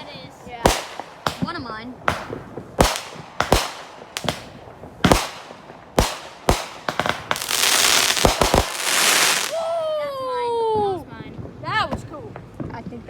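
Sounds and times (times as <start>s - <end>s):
fireworks bangs: 0.0s - 9.6s
fireworks crackling hiss: 0.0s - 9.8s.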